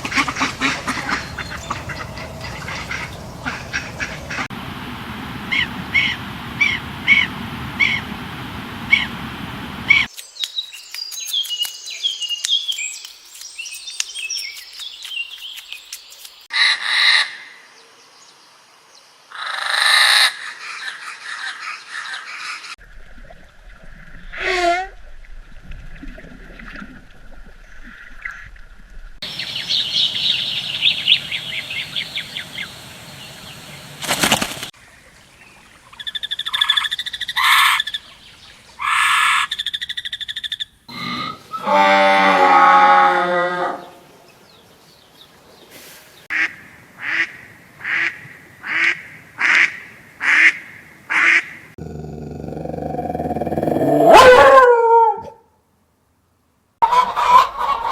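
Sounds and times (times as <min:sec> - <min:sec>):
animal calls: 0:00.0 - 0:04.5, 0:51.8 - 0:55.4.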